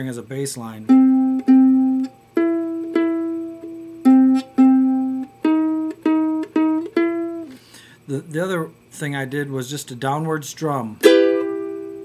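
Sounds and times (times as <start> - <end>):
ukulele plucked single notes: 0.9 - 7.5, 11.0 - 12.0.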